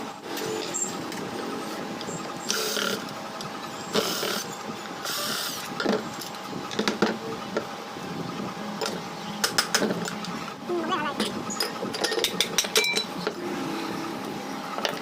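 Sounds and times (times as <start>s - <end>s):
sharp clicks and knocks: 8.8s - 10.4s, 11.2s - 13.4s.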